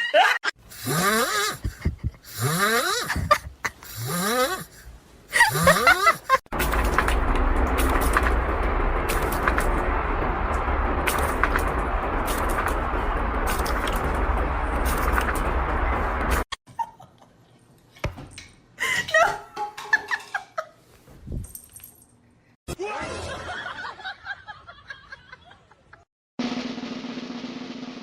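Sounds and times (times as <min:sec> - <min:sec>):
people laughing: 0:05.3 - 0:06.4, 0:22.8 - 0:26.0.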